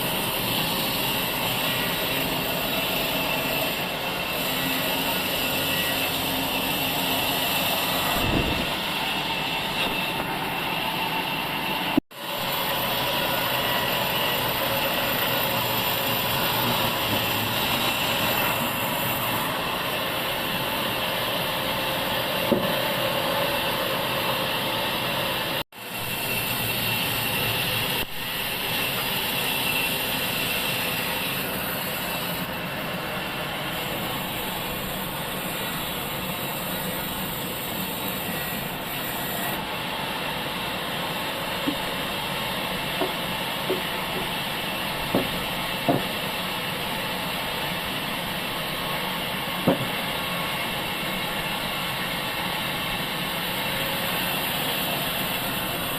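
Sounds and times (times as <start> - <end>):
sawmill machinery drone: 0.0 - 55.9
sharp knocks: 43.0 - 44.3, 45.1 - 46.2, 49.6 - 50.0.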